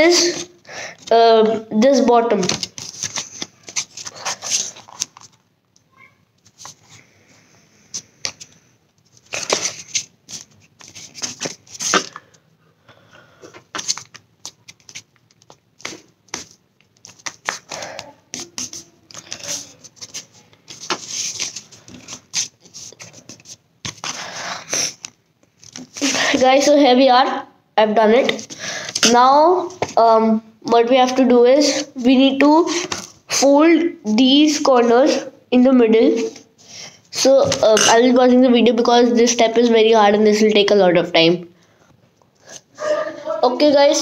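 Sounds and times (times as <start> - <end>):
paper rustling and creasing: 2.3 - 5.4, 9.0 - 12.2, 13.7 - 24.3.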